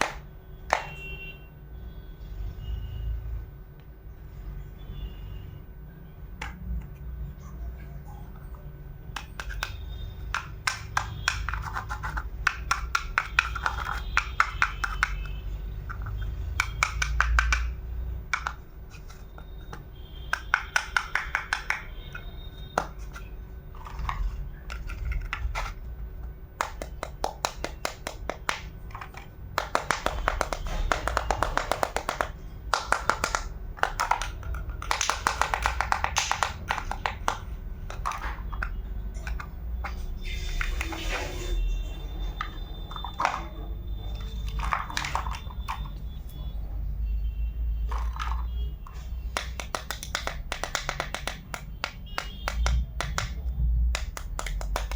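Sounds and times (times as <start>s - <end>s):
miniature utensils clicking and tapping: 8.4s - 41.0s, 42.4s - 46.0s, 47.8s - 54.9s.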